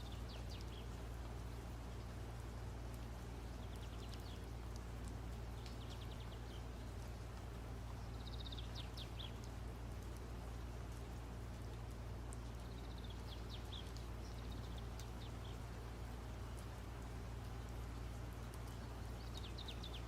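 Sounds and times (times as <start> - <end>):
bird chirping in rapid trills: 8.2 - 9.4, 12.6 - 15.6, 19.1 - 20.0.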